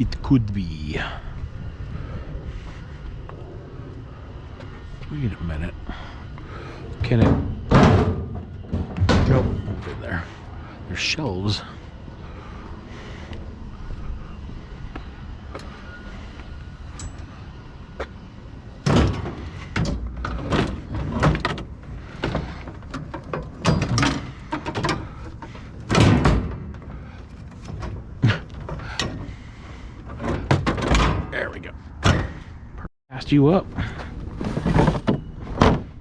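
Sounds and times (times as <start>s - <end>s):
metal shelving clanking and rattling: 6.6s - 11.7s, 18.7s - 32.5s, 33.8s - 36.0s.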